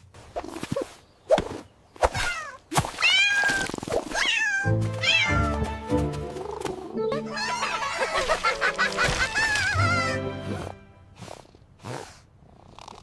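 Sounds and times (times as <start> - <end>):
music: 4.6 - 9.1, 9.8 - 11.1.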